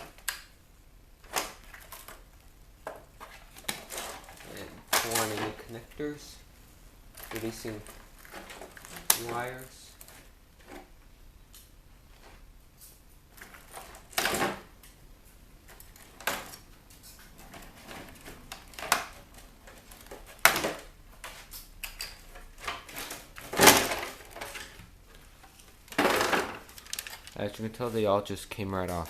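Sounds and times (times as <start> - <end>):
wire connectors clicking off: 26.6 - 27.6.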